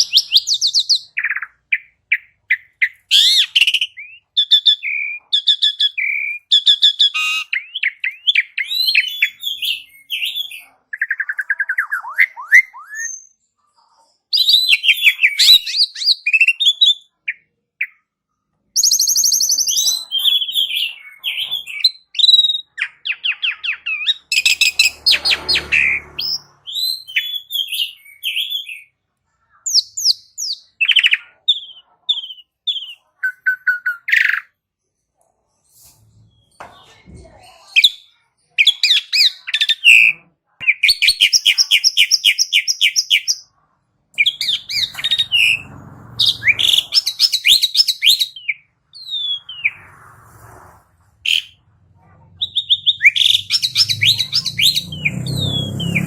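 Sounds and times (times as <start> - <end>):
starling singing: 0.0 - 13.4, 18.8 - 29.0, 29.7 - 34.5, 37.8 - 43.5, 44.2 - 50.0, 51.2 - 51.7, 52.4 - 56.0.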